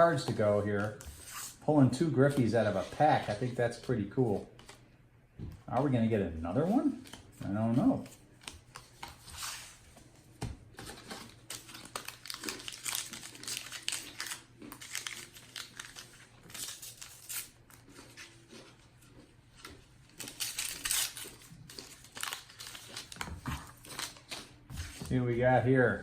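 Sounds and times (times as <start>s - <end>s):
foil wrappers crinkling: 10.8s - 18.9s, 19.6s - 25.2s.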